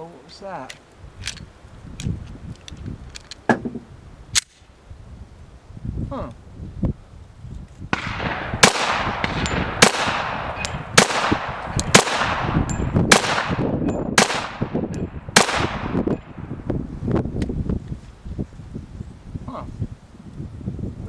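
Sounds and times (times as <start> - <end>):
pistol shots with echo: 7.9 - 16.5.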